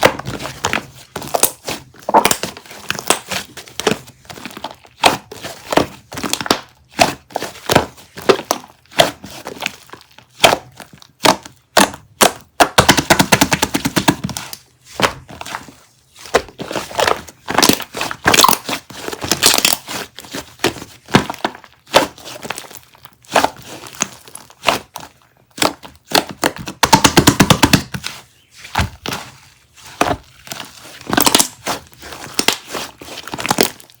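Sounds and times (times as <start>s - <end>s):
crunching and cracking snaps: 0.0s - 15.6s, 29.9s - 34.0s.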